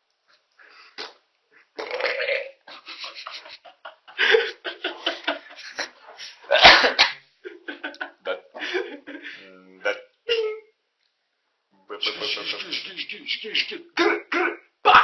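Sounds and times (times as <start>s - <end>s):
person making mouth noises: 0.8s - 3.6s.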